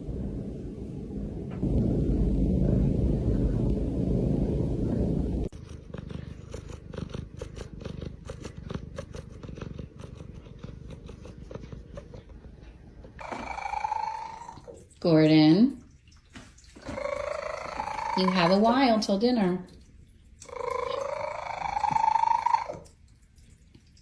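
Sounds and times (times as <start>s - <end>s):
cat purring: 2.6s - 14.8s, 16.8s - 18.8s, 20.4s - 22.9s.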